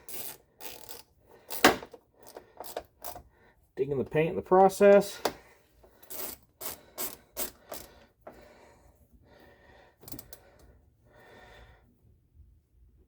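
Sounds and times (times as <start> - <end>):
hand ratchet clicking: 0.0 - 3.2, 5.2 - 8.0, 10.0 - 10.4.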